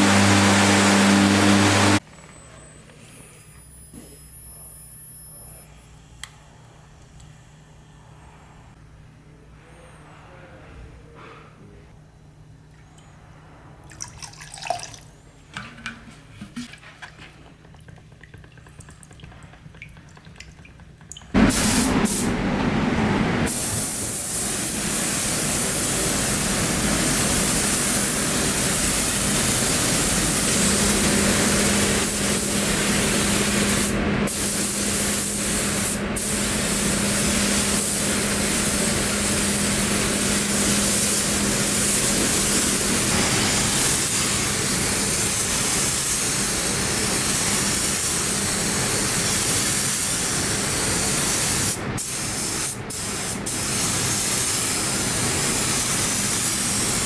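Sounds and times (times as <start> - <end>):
faint water drips: 17.1 - 21.3
spray hiss: 21.4 - 22.6, 23.5 - 57.0.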